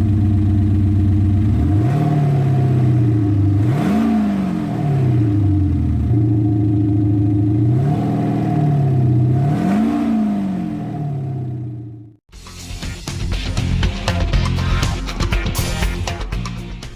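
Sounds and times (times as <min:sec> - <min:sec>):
synthetic engine sound revving: 0:01.4 - 0:06.4, 0:07.6 - 0:12.2
music: 0:12.3 - 0:16.9.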